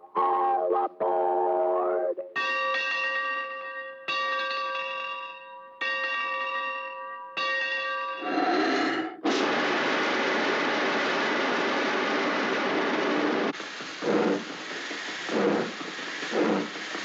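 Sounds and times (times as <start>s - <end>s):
locomotive bell ringing: 2.3s - 8.3s
steam hissing: 8.7s - 17.0s.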